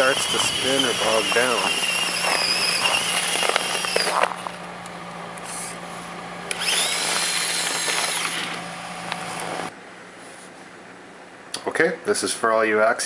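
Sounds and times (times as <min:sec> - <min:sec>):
electric motor and gears whining: 0:00.0 - 0:09.7.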